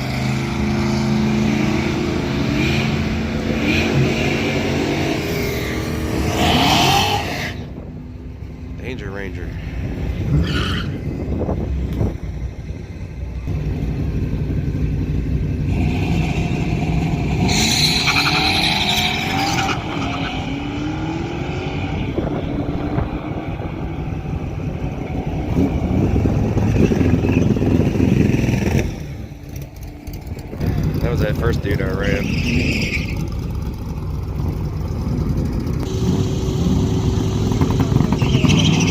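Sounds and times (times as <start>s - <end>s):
cars accelerating hard: 0.0s - 7.8s, 15.6s - 29.4s, 30.5s - 38.9s.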